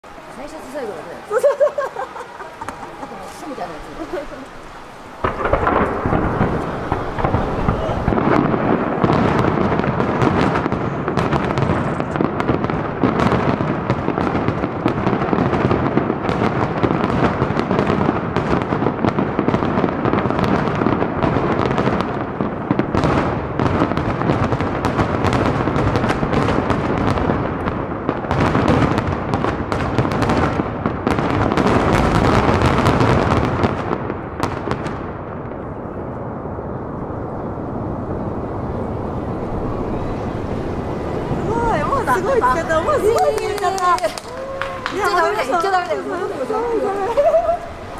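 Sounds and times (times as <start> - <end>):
fireworks bursts and crackling: 0.0 - 47.9
heavy low rumble: 36.0 - 43.1.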